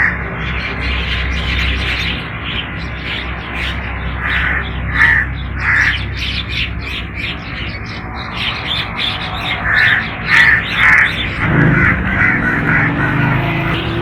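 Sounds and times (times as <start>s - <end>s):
crows cawing: 3.6s - 7.0s, 8.2s - 14.0s.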